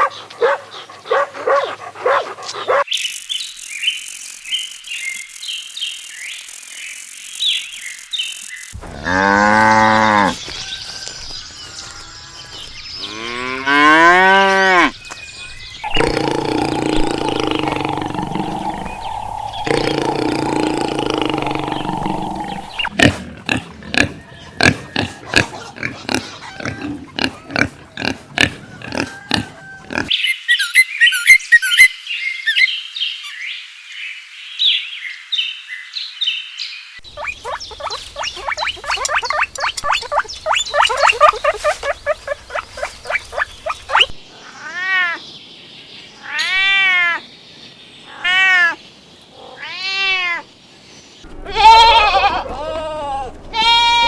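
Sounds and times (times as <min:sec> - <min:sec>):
animal growling: 0:08.8 - 0:10.5, 0:15.8 - 0:24.1
high animal chirping: 0:14.5 - 0:23.0, 0:37.0 - 0:44.2
rapid animal clicking calls: 0:15.8 - 0:23.0, 0:37.0 - 0:44.2
cat meowing: 0:51.4 - 0:54.0.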